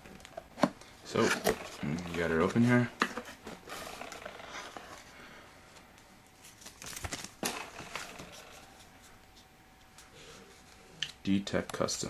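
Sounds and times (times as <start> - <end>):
packaging rustling and crinkling: 6.3 - 9.1.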